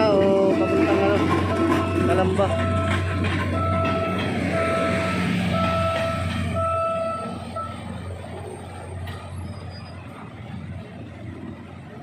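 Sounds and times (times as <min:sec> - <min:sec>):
repeating single-pitched tone: 0:00.0 - 0:07.8
diesel train engine rumble: 0:00.0 - 0:12.0.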